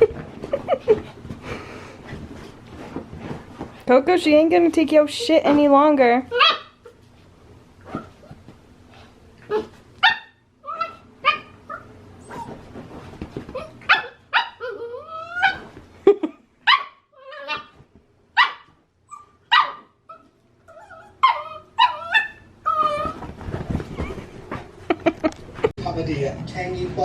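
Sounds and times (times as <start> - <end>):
dogs barking and yipping: 6.3 - 6.9, 9.5 - 12.6, 13.5 - 15.7, 16.7 - 17.8, 18.4 - 23.3
dog whining: 6.3 - 7.0, 7.8 - 8.4, 9.4 - 12.7, 13.5 - 15.8, 16.7 - 17.8, 18.5 - 24.6.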